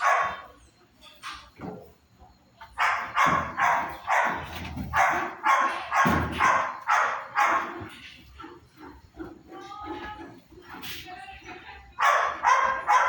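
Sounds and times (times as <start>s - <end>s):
dog barking: 0.0s - 0.5s, 2.8s - 7.9s, 12.0s - 13.0s.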